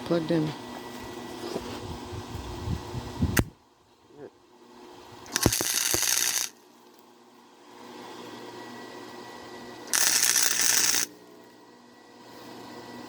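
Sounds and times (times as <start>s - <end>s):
arc welding crackling sizzle: 5.2s - 7.0s, 9.9s - 11.1s.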